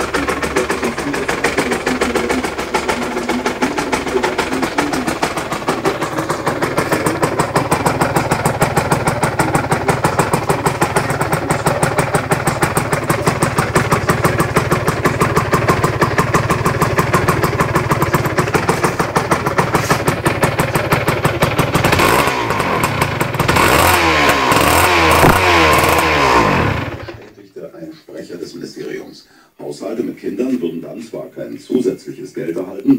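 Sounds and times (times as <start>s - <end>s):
engine throttle blips: 0.0s - 27.3s
two-stroke engine idling: 0.0s - 27.4s.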